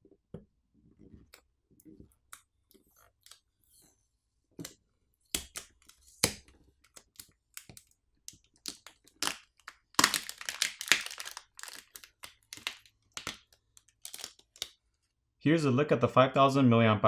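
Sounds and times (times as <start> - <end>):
clicks and crackles of glue: 4.6 - 15.1.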